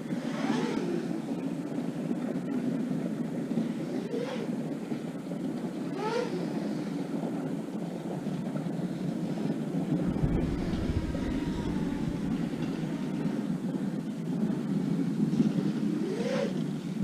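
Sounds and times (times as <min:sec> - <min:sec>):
wind buffeting microphone: 0:09.8 - 0:14.7.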